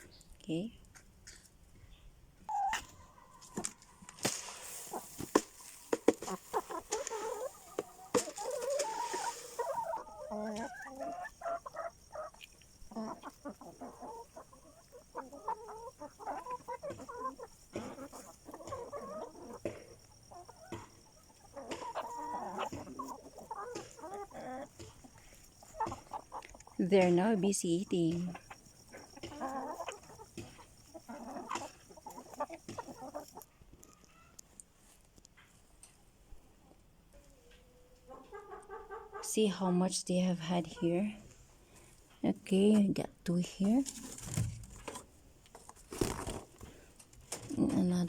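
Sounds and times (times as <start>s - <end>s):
hens clucking: 2.4s - 34.5s, 36.7s - 41.9s, 42.5s - 48.0s
rustling hiss: 3.4s - 33.4s.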